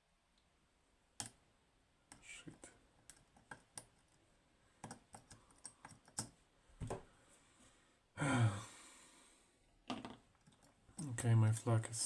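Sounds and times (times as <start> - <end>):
long falling sigh: 8.2 - 9.2.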